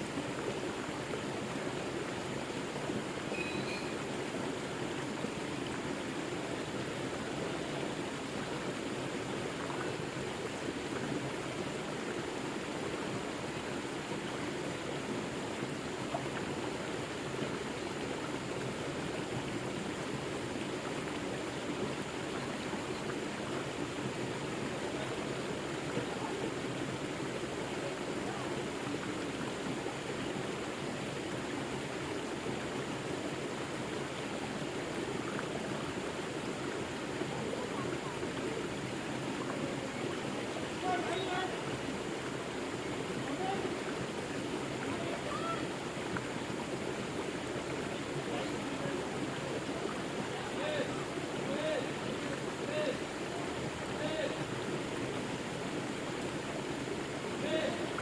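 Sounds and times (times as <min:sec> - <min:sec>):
river water rushing over rocks: 0:00.0 - 0:58.0.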